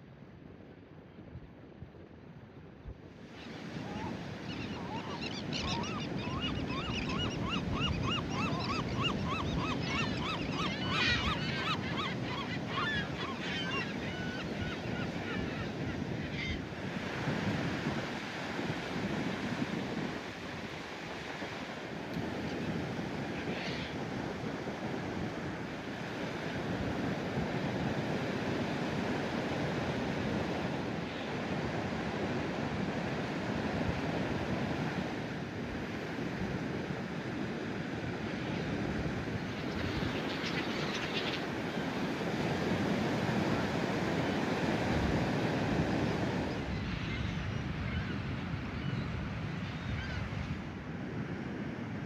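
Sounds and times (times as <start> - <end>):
ocean surf washing onto beach: 16.7 - 47.0.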